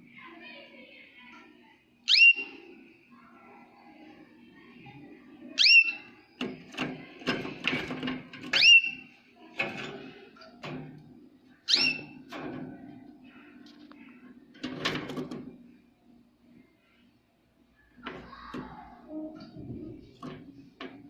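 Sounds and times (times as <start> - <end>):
canary chirping calls: 2.1 - 2.6, 5.6 - 6.3, 8.5 - 9.1, 11.6 - 12.3
clicks and rustles: 6.4 - 8.7.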